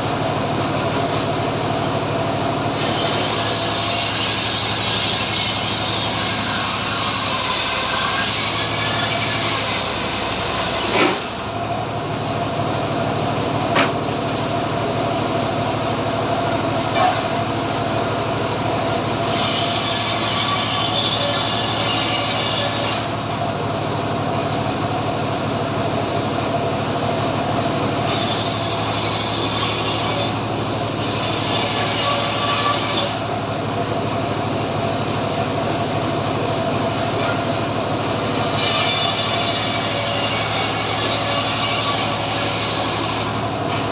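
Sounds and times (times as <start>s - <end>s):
sawmill engine running: 0.0s - 43.9s
saw cutting log: 2.7s - 11.4s, 16.8s - 17.4s, 18.9s - 23.4s, 28.0s - 33.4s, 36.9s - 43.9s.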